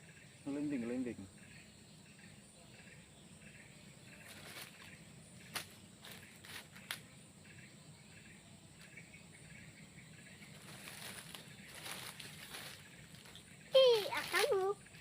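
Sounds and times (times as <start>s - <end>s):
faint chirps: 0.0s - 15.0s
sharp crackles in vegetation: 4.1s - 7.2s, 10.3s - 15.0s.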